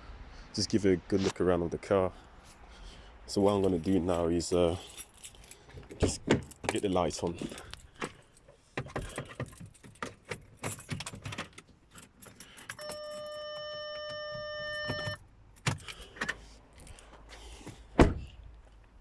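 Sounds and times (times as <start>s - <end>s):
car keys jangling: 3.5s - 17.1s
electronic warning chime: 12.8s - 15.2s
loud thump: 18.0s - 18.4s.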